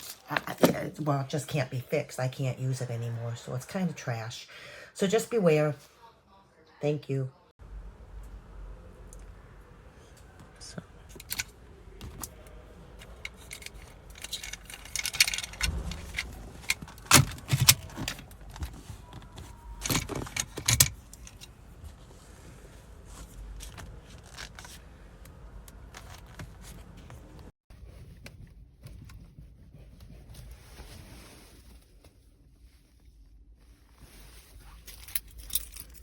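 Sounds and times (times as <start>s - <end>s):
metal jangling and clicking: 11.1s - 18.8s, 19.8s - 21.5s, 34.8s - 36.0s.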